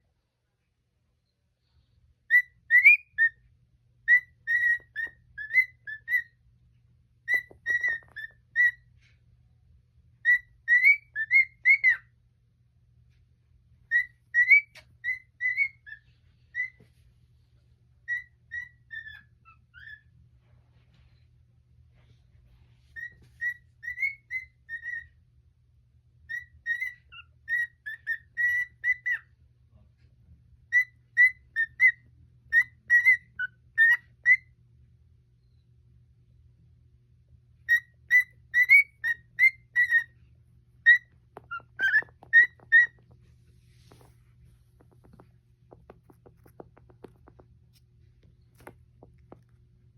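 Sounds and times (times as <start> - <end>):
cockatiel whistling: 2.2 - 6.4, 7.2 - 8.9, 10.2 - 12.1, 13.8 - 16.8, 18.0 - 20.1, 22.9 - 25.2, 26.3 - 29.3, 30.7 - 34.5, 37.7 - 44.2, 44.8 - 47.4.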